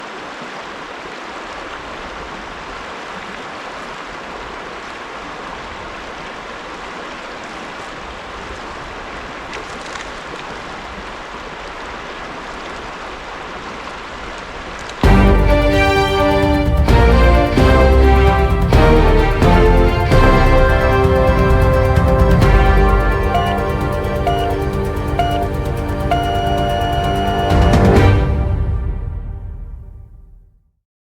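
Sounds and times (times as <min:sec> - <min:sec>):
creek babbling over rocks: 0:00.0 - 0:17.0.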